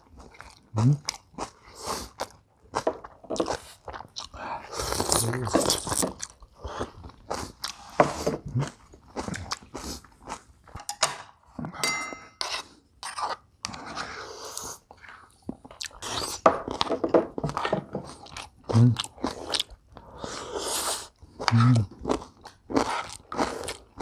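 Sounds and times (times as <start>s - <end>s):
chewing and crunching food: 0.0s - 11.8s, 12.5s - 24.0s.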